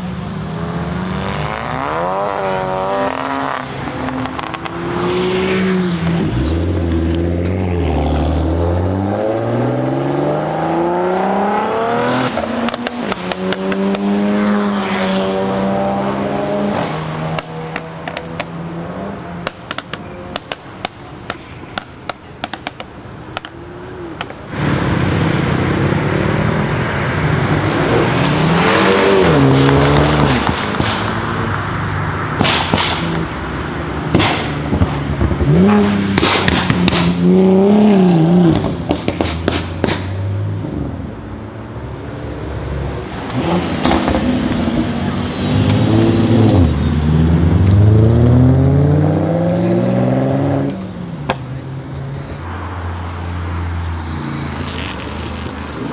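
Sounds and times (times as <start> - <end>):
car engine revving: 0.0 - 20.7, 23.8 - 41.3, 42.9 - 51.4
exhaust popping and crackling: 1.5 - 7.6, 16.7 - 18.6, 19.4 - 41.2, 43.0 - 47.8.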